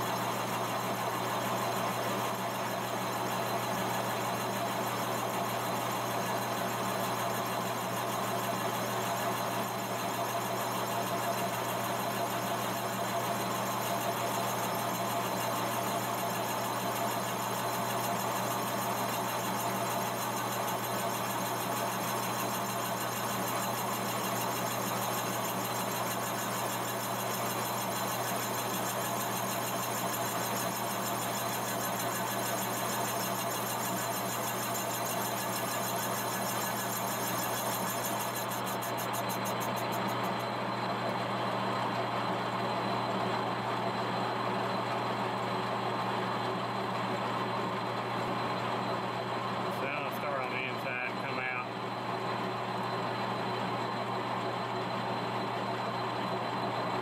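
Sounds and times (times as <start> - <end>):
lathe running with hum: 0.0 - 57.0.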